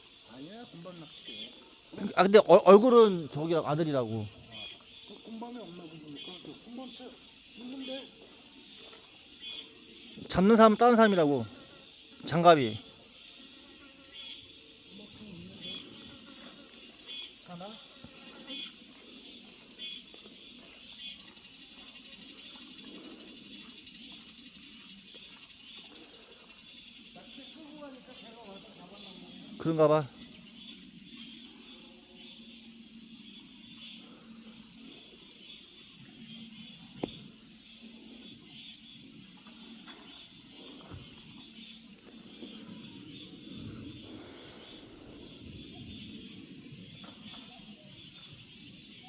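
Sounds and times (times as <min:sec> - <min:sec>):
insects chirping: 0:00.0 - 0:49.0
steady hiss: 0:00.0 - 0:49.0.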